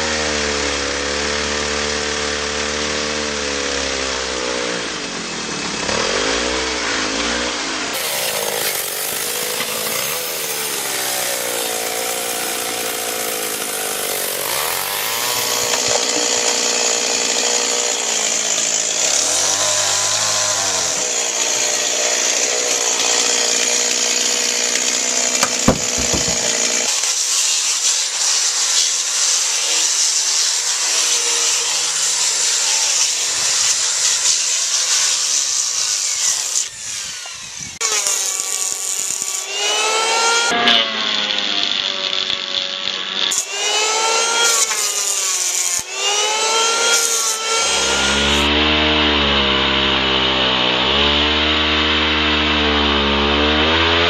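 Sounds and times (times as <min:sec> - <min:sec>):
chainsaw cutting wood: 0:00.0 - 0:54.0
sharp knock: 0:25.4 - 0:26.7.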